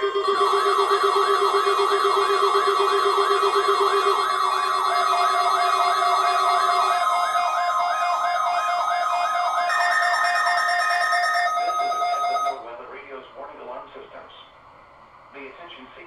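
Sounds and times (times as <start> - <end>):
steady alert tones: 0.0 - 12.6
warbling siren-like alarm: 0.0 - 12.6.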